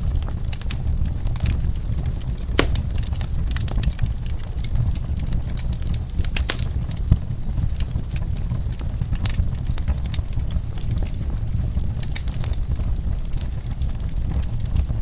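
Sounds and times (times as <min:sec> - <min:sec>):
wood fire crackling: 0:01.5 - 0:04.4, 0:05.0 - 0:09.3
fire pops and snaps: 0:02.5 - 0:03.4, 0:06.2 - 0:07.3.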